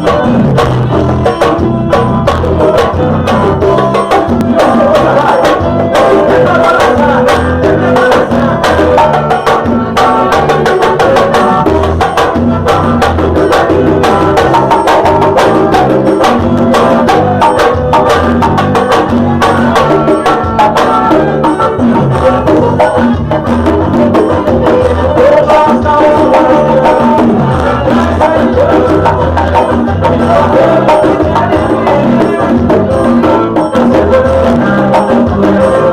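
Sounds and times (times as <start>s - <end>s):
band music: 0.0s - 35.9s
hand percussion strikes: 0.0s - 35.9s.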